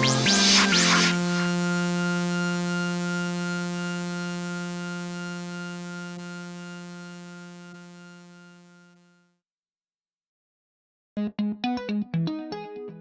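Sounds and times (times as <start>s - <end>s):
electronic music: 0.0s - 5.2s.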